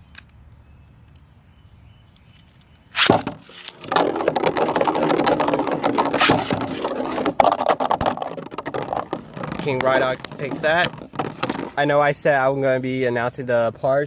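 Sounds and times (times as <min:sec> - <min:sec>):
spinning tops launched with a rip: 0:02.9 - 0:03.9, 0:06.0 - 0:07.2
spinning tops clattering together: 0:03.0 - 0:11.8.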